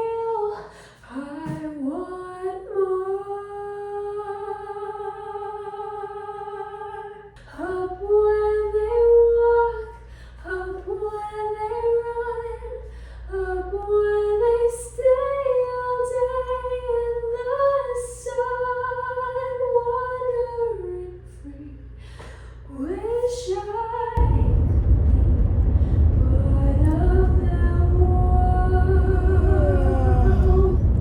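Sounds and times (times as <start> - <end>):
woman singing slow melody: 0.0 - 22.0, 22.6 - 24.5, 26.2 - 31.0.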